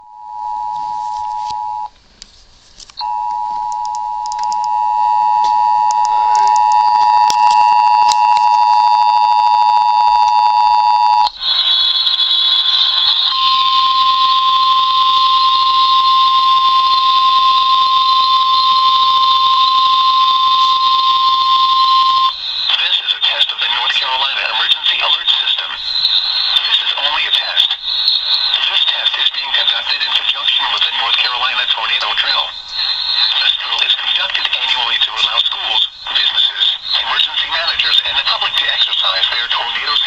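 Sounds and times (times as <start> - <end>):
harsh two-note alarm tone: 3.0 - 22.4.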